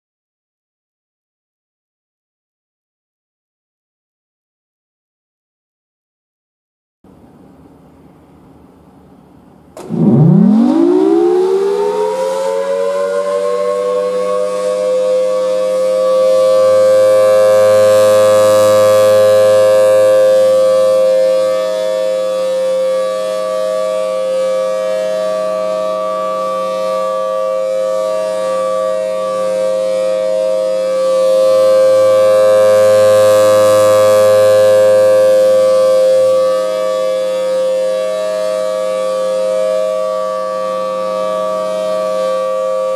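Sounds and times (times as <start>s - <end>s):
tornado siren wailing: 9.8s - 42.9s.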